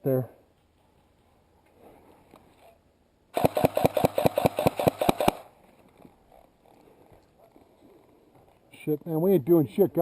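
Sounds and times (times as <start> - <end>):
airsoft rifle rapid burst: 3.4 - 5.5.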